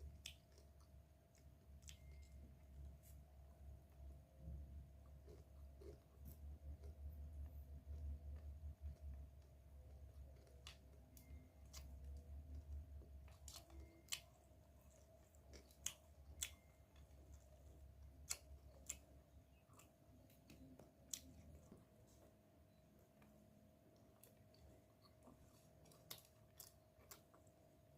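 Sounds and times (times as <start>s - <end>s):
crunchy chewing: 0.0s - 3.2s, 3.8s - 22.3s, 23.0s - 27.9s.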